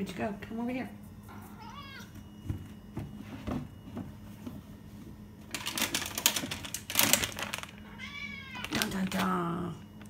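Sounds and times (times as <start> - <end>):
plastic bag crinkling: 5.5 - 10.0.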